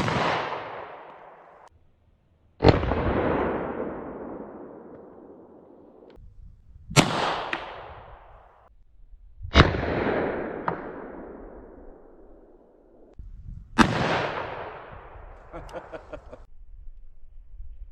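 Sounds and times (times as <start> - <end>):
handgun shots with echo: 0.0 - 1.6.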